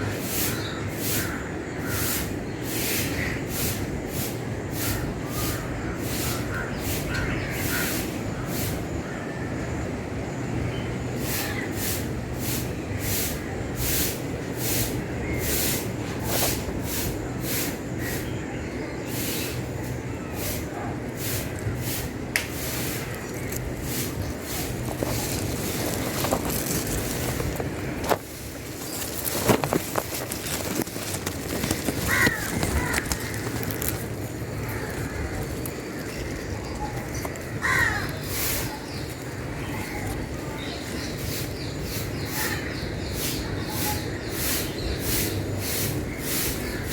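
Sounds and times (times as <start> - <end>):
broom sweeping: 0.1 - 8.8, 11.2 - 18.4, 19.0 - 46.9
crow cawing: 0.5 - 2.2, 4.8 - 9.5, 32.0 - 36.2, 37.2 - 38.8
steady low rumble: 12.1 - 44.2.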